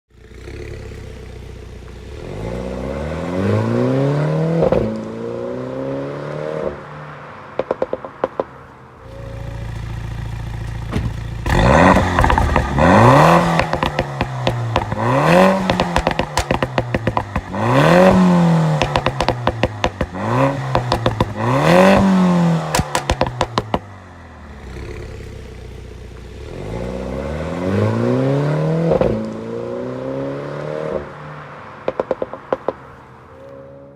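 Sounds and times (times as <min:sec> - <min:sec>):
car exhaust revving: 0:07.6 - 0:31.1
exhaust pops and crackles: 0:10.6 - 0:23.9, 0:31.9 - 0:32.9.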